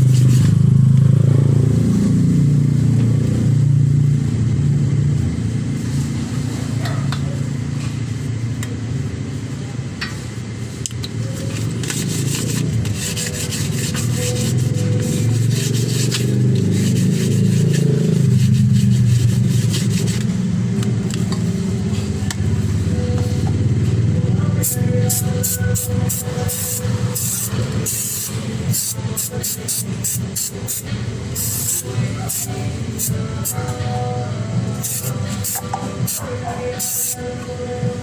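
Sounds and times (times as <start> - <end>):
sandpaper scraping metal: 11.3 - 20.4.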